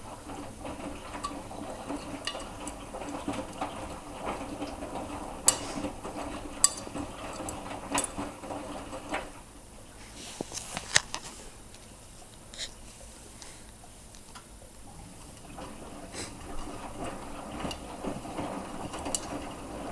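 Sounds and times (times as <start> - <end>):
washing machine drum tumbling: 0.0 - 9.8, 14.5 - 19.9
water sloshing: 0.2 - 9.3.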